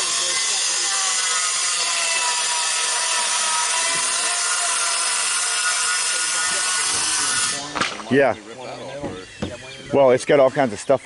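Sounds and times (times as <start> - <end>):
power saw cutting wood: 0.0 - 8.2.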